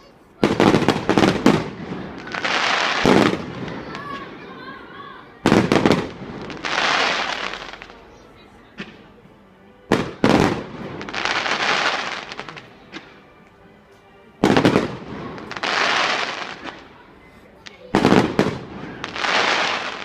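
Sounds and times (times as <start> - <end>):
firework bangs: 0.4 - 4.4, 5.4 - 8.0, 9.9 - 12.7, 14.4 - 16.8, 17.7 - 20.0
firework crackling: 0.4 - 4.7, 5.4 - 8.2, 9.9 - 12.8, 14.4 - 17.0, 17.6 - 20.0.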